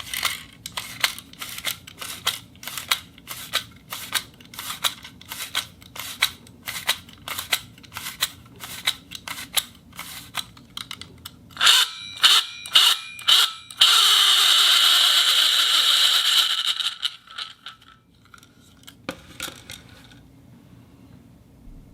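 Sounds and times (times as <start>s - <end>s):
reel ratchet clicking: 11.6s - 17.9s
reel spinning with steady whir: 11.6s - 18.5s.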